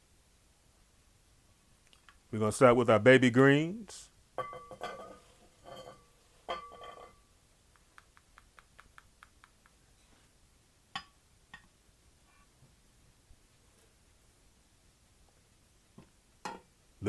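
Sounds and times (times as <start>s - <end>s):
dishes and utensils clinking: 4.4s - 7.2s
small rapid ticks: 7.7s - 9.8s.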